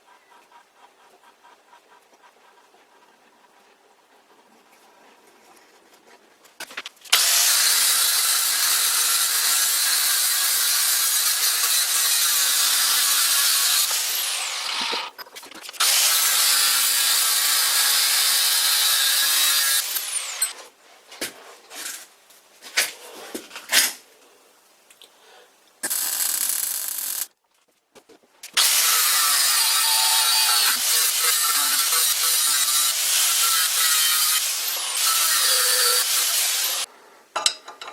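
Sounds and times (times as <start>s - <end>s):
power tool grinding metal: 7.1s - 20.6s, 28.6s - 36.9s.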